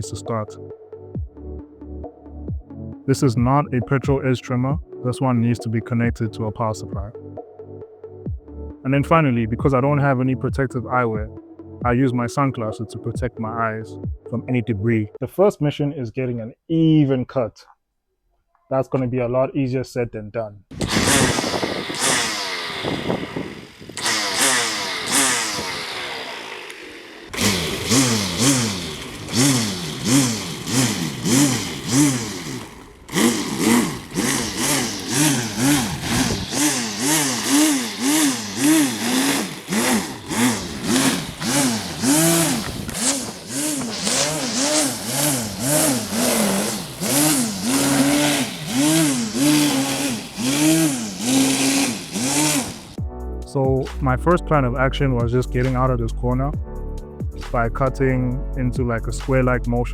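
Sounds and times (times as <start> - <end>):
string trimmer cutting grass: 0.0 - 0.5, 20.7 - 53.1.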